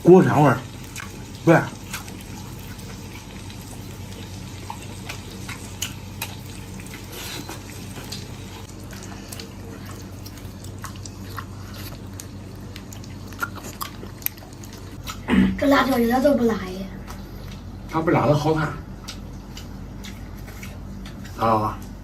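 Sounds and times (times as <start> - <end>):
steady low hum: 0.0 - 22.0
biting and chewing: 0.8 - 15.3, 19.0 - 22.0.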